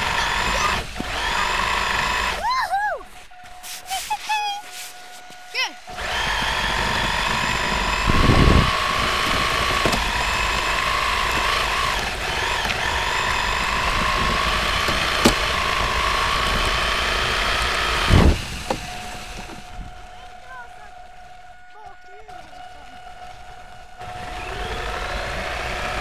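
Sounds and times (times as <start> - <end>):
toy car motor whining: 0.0 - 26.0.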